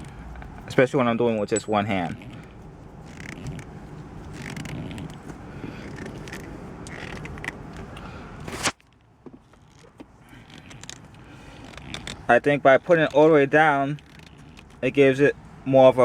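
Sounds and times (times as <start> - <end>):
shift knob scraping and creaking: 0.0 - 15.2.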